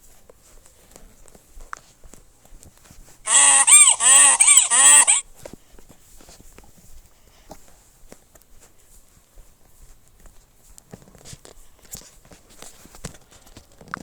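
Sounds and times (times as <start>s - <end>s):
loud animal calls: 3.3s - 5.2s.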